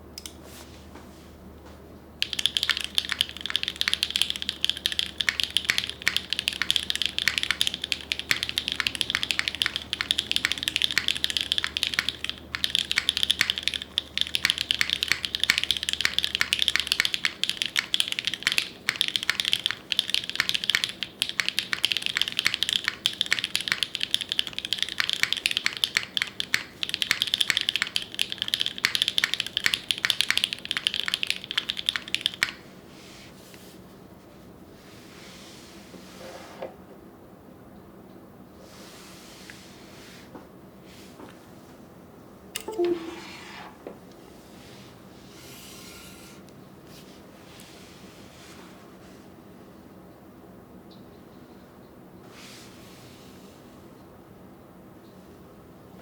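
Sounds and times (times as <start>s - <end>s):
fast mechanical keyboard typing: 2.2s - 32.6s.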